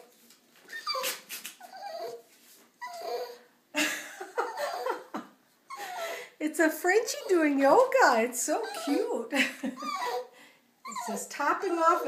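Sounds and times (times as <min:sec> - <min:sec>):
dog whining: 0:00.7 - 0:03.5, 0:04.5 - 0:05.0, 0:07.0 - 0:07.6, 0:08.6 - 0:12.0.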